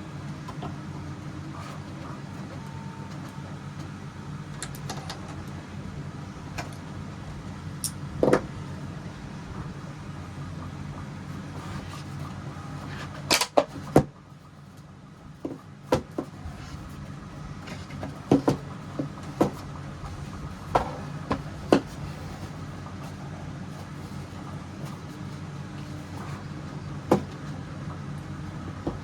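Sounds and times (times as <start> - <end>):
steady low hum: 0.0 - 13.2.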